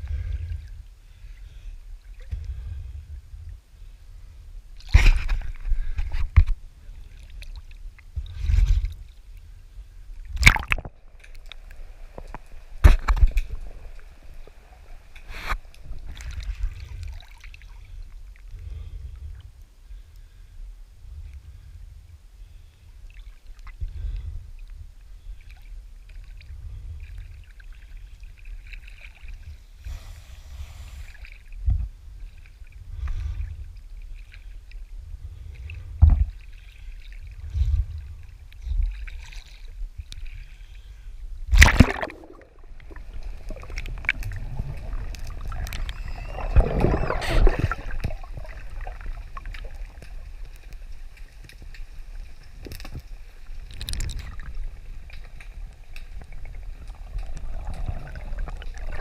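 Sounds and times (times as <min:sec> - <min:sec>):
wind rumble on microphone: 0:00.0 - 0:01.0, 0:01.9 - 0:27.6, 0:29.3 - 0:36.5, 0:37.2 - 0:40.3, 0:41.1 - 0:59.0
water splashing against hull: 0:04.8 - 0:09.5, 0:10.1 - 0:19.5, 0:41.4 - 0:59.0.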